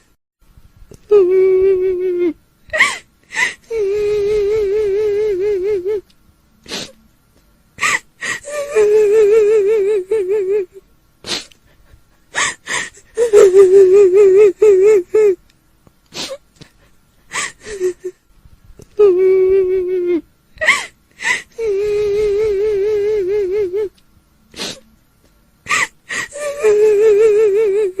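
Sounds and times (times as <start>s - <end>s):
woman wailing: 7.8s - 10.8s, 12.4s - 15.4s, 25.7s - 28.0s.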